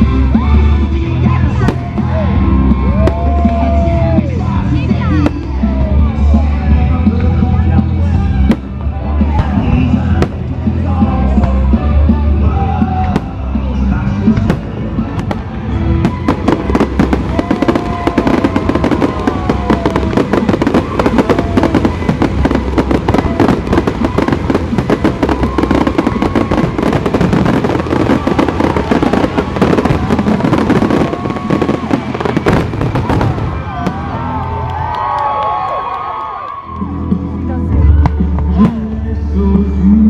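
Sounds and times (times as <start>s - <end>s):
music with heavy bass: 0.0s - 34.9s, 36.6s - 40.0s
fireworks going off: 8.3s - 35.4s.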